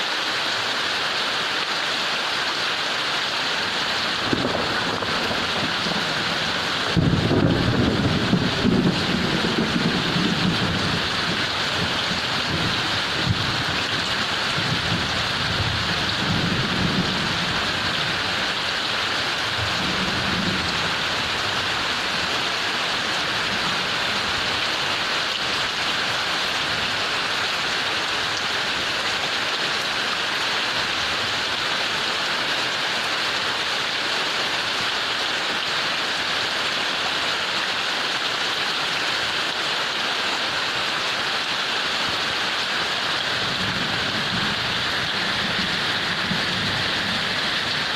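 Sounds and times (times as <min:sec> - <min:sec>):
heavy rain: 0:00.0 - 0:47.9
thunder rumbles: 0:04.1 - 0:18.6, 0:19.5 - 0:22.3, 0:43.3 - 0:47.9.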